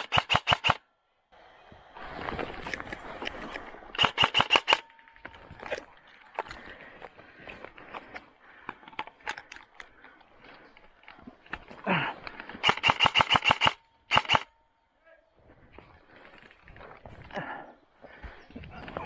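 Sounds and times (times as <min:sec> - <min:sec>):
airsoft rifle shots: 0:00.0 - 0:00.8, 0:04.0 - 0:04.9, 0:12.6 - 0:14.5.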